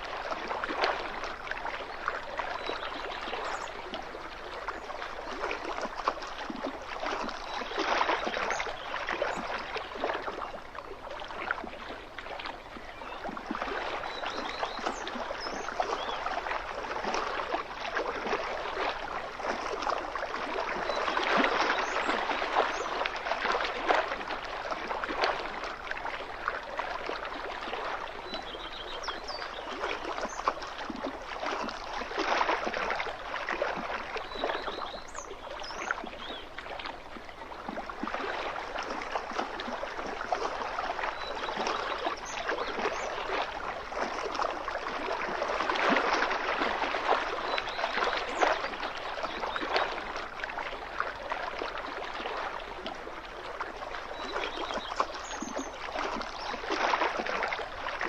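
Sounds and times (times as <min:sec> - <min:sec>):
small waves lapping on shore: 0:00.0 - 0:58.0.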